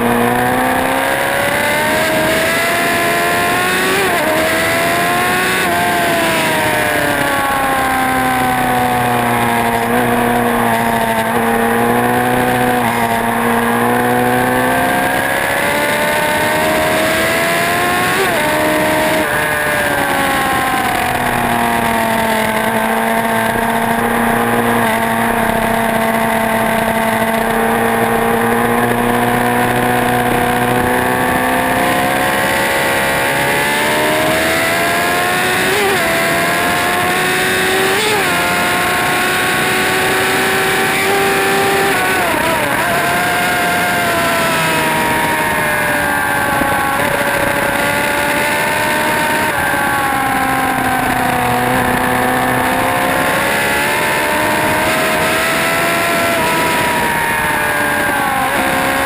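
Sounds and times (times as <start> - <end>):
motorcycle engine revving: 0.0 - 59.0.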